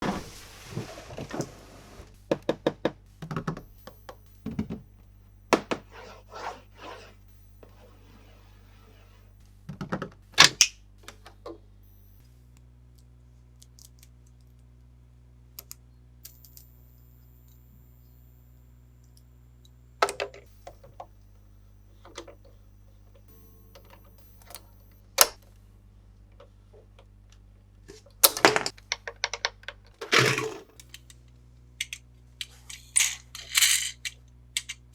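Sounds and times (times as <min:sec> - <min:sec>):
plastic toys tapping and clicking: 0:28.2 - 0:31.1.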